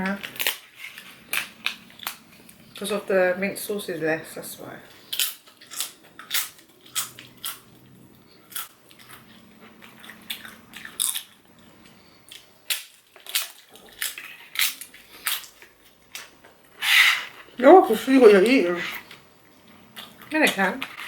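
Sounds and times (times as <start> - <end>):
crisp bites and chewing: 0.2 - 2.8, 5.1 - 7.9, 8.5 - 11.6, 12.3 - 16.4.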